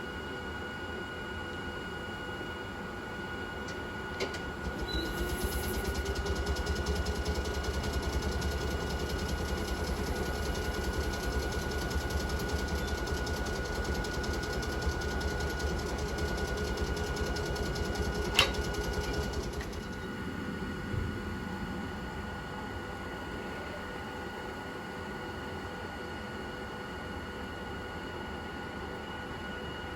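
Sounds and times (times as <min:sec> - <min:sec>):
railcar machinery hum with pulsing: 0:02.7 - 0:25.6.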